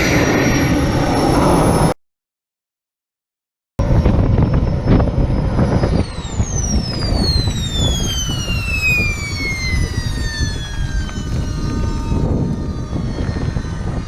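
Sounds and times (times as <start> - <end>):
jet turbine whine spooling down: 0.0 - 2.0, 3.8 - 14.0
wind on microphone: 0.0 - 2.0, 3.8 - 14.0.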